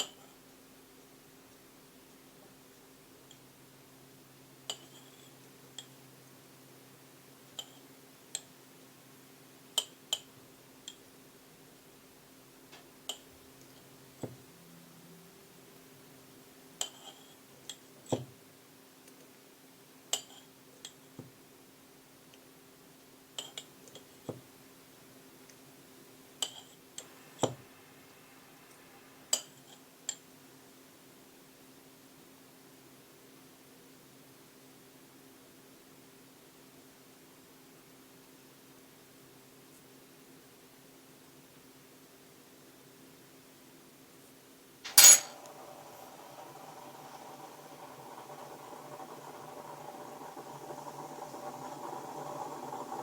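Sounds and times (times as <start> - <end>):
utensils clinking on dishware: 44.9 - 45.5.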